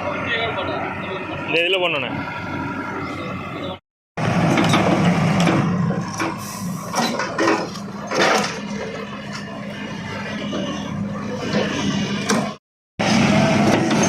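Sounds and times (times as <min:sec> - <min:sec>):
excavator engine humming: 0:00.0 - 0:14.0
metallic clanks and rattles: 0:04.5 - 0:09.0.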